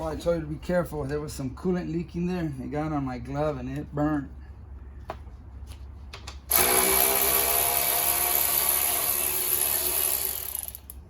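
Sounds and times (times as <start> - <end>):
power drill motor spinning: 6.5 - 11.0.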